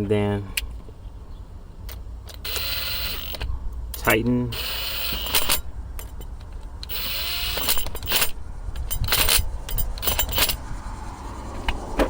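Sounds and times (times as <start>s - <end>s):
impact wrench bursts: 2.3s - 6.2s, 6.8s - 10.7s.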